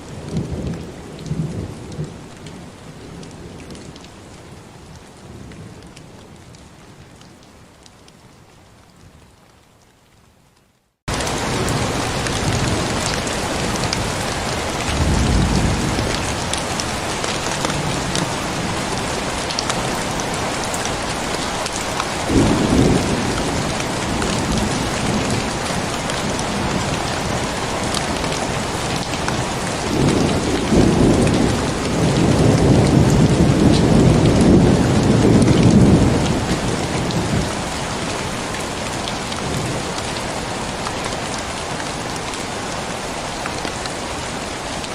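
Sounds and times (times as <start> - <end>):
heavy rain: 0.0 - 44.9
thunder rumbling: 11.1 - 38.4.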